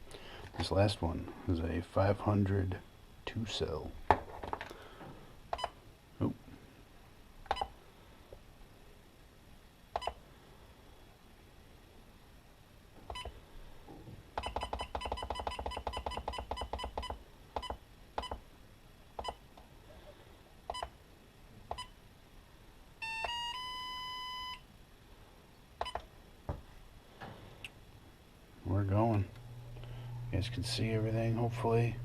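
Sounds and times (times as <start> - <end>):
battery charger beeping: 5.5 - 5.8, 10.0 - 10.2, 13.1 - 13.4, 14.4 - 18.4, 20.7 - 21.0, 23.0 - 24.6, 25.8 - 26.1.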